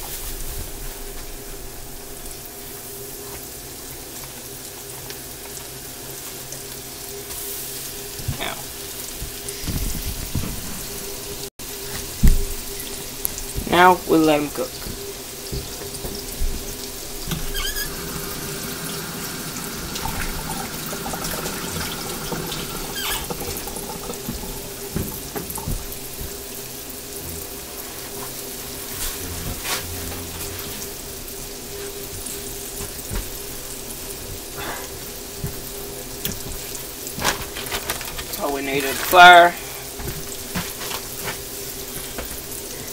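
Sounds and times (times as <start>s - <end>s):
meat frying in hot oil: 0.0s - 42.9s
low steady hum: 11.7s - 36.5s.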